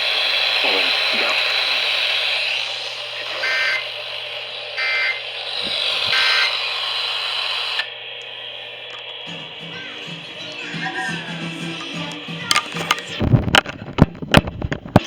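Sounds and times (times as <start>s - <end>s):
radio static: 0.4s - 6.6s
warbling two-tone data bursts: 0.5s - 6.6s.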